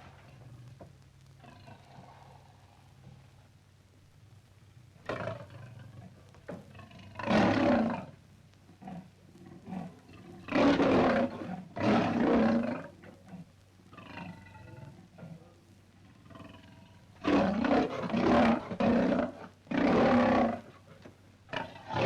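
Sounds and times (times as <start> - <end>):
lion roaring: 6.8 - 8.2, 8.8 - 20.9, 21.5 - 22.0.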